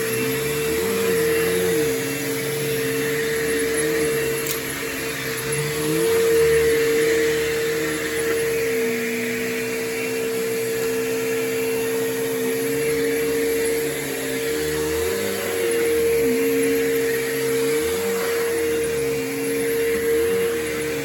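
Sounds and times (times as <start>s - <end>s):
vacuum cleaner motor whine: 0.0s - 21.0s.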